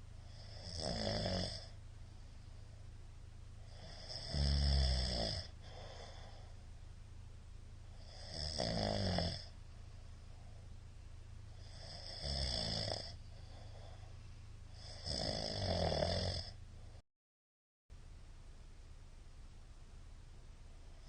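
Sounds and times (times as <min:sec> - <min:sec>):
steady low hum: 0:00.0 - 0:17.0, 0:17.9 - 0:21.0
man snoring: 0:00.2 - 0:01.8, 0:03.7 - 0:06.4, 0:07.9 - 0:09.6, 0:11.6 - 0:14.0, 0:14.7 - 0:16.6.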